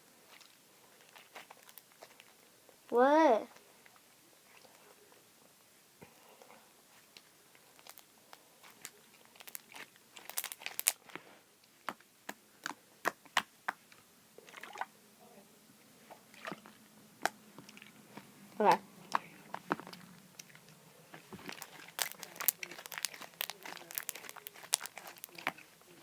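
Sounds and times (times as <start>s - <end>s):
slime squeezed popping: 8.7s - 11.0s, 21.4s - 25.6s.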